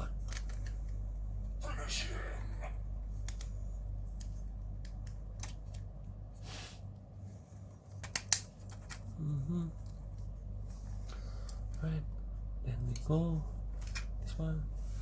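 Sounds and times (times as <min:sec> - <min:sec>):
low electrical hum: 0:00.0 - 0:15.0
plastic parts clicking and snapping: 0:00.2 - 0:01.0, 0:04.2 - 0:05.9, 0:08.0 - 0:09.1.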